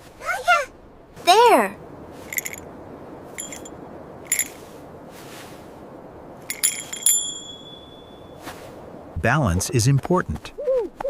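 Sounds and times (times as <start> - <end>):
chimes ringing: 2.3 - 2.6, 3.4 - 3.7, 4.3 - 4.6, 6.5 - 8.4
small bells tinkling: 2.3 - 2.6, 3.3 - 4.7, 6.5 - 8.4.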